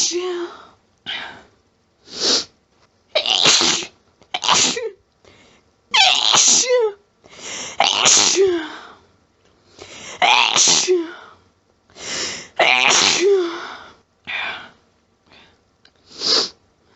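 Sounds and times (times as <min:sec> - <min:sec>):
person sneezing: 0:03.2 - 0:05.0, 0:07.8 - 0:08.7, 0:10.2 - 0:11.1, 0:12.6 - 0:13.6.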